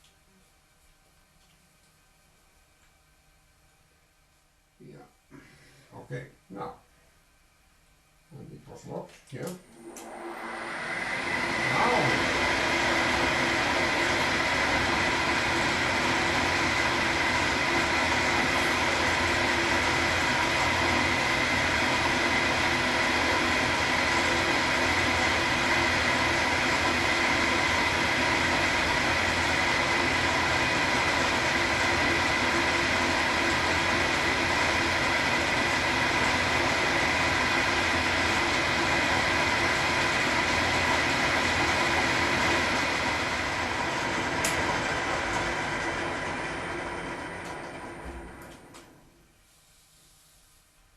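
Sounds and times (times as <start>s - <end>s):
milling machine whining: 9.7s - 49.0s.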